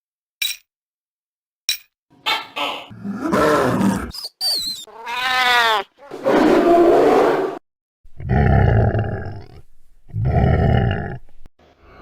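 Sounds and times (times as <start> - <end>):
dragon roar: 2.9 - 4.1, 8.2 - 11.2
deep rumbling growls: 6.3 - 11.4.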